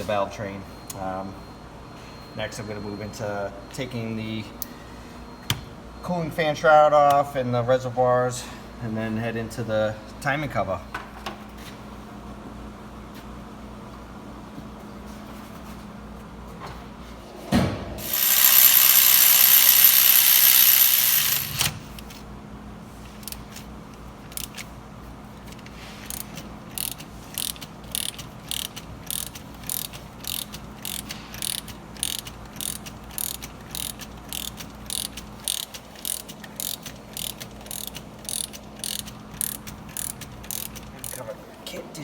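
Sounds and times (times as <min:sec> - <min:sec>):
ratchet wrench clicking: 0:18.0 - 0:22.0, 0:24.3 - 0:24.7, 0:26.0 - 0:41.2.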